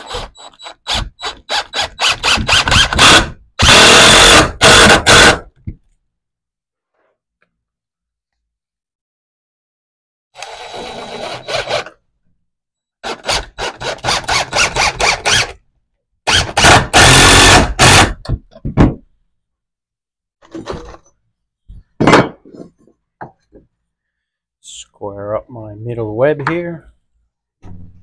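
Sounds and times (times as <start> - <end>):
power drill driving screws: 0.0 - 5.4, 10.4 - 12.0, 13.0 - 15.6, 16.3 - 18.2.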